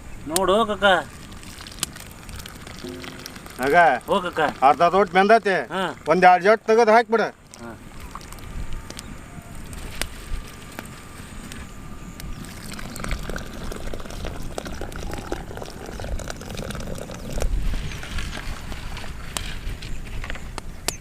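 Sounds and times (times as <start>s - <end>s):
rice boiling in water: 0.4s - 6.3s, 12.2s - 19.9s.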